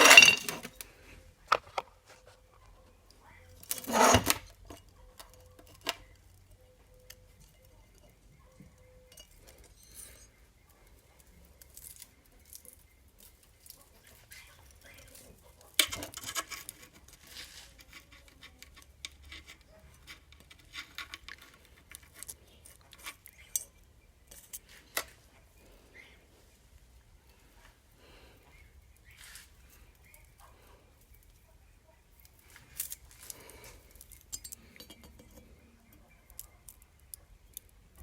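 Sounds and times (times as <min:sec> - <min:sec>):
sharp metal clank: 0:00.0 - 0:00.6
metal tools clinking: 0:00.0 - 0:00.8, 0:03.6 - 0:04.8, 0:09.1 - 0:10.4, 0:32.5 - 0:35.5.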